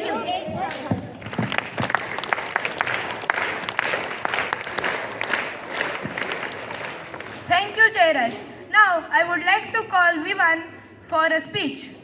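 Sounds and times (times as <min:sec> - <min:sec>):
children applauding: 0:01.2 - 0:07.5.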